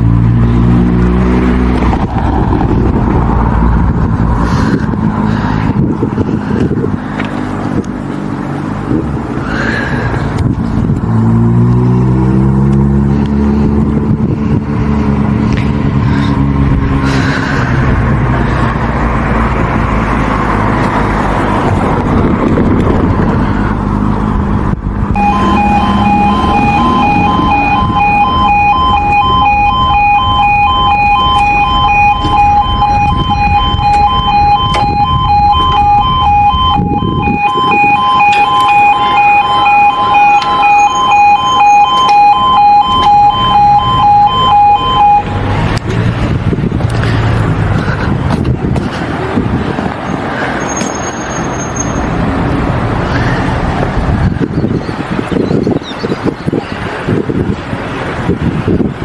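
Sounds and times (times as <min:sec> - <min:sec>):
road vehicles passing: 0:00.0 - 0:59.0
level crossing alarm beeping: 0:25.1 - 0:45.6.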